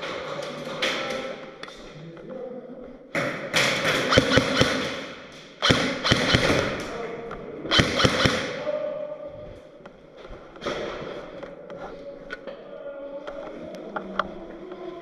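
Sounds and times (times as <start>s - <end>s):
airsoft guns firing bursts: 3.6s - 6.9s, 7.7s - 8.6s.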